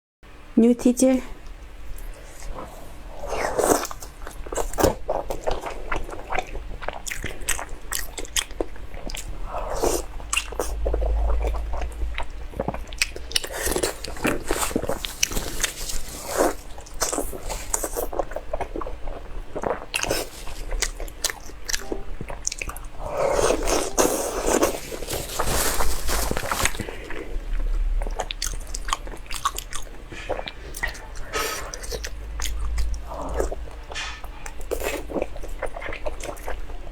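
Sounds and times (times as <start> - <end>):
person chewing seafood: 1.4 - 36.9.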